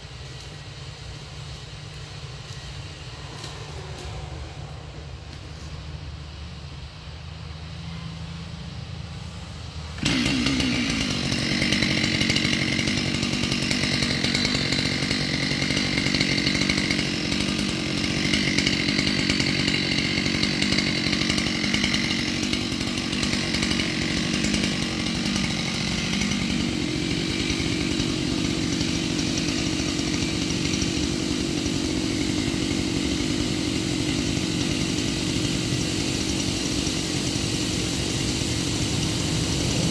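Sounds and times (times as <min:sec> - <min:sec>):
chainsaw running: 0:00.0 - 0:06.6, 0:09.9 - 0:39.9.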